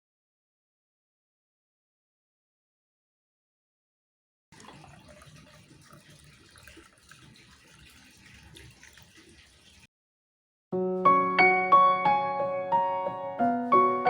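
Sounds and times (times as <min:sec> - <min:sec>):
water running from a tap: 0:04.6 - 0:09.9
piano music: 0:10.8 - 0:14.0.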